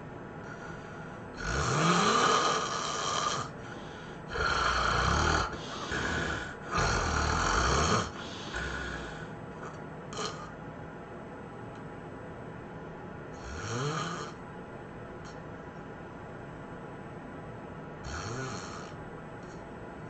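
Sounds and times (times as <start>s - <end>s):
person snoring heavily: 0.5s - 10.5s, 13.4s - 14.4s, 18.0s - 19.0s.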